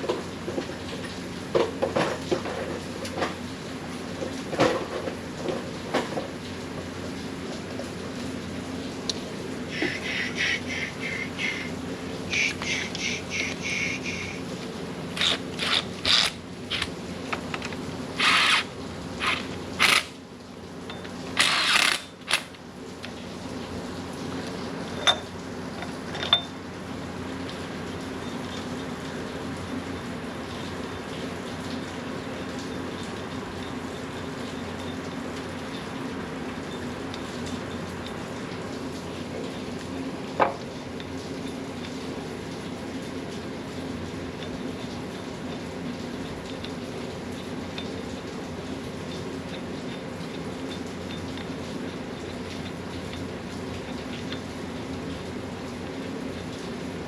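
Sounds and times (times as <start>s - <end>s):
steady low hum: 6.4s - 57.0s
hand ratchet clicking: 15.2s - 16.9s, 18.2s - 20.1s, 21.4s - 22.5s.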